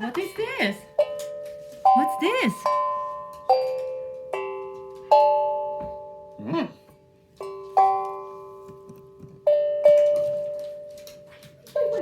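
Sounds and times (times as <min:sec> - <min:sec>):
person humming: 0:06.4 - 0:06.8.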